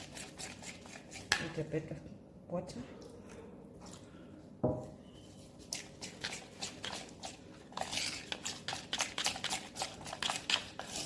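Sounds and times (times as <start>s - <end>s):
spoon stirring paste in bowl: 0.0s - 2.0s, 5.0s - 11.0s.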